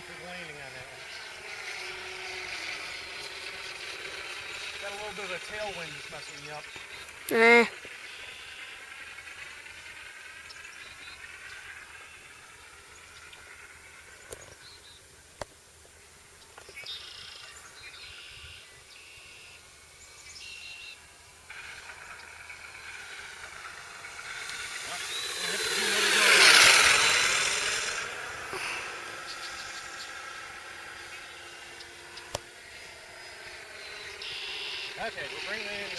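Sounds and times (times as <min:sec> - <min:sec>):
model airplane engine drone: 0:00.0 - 0:35.9.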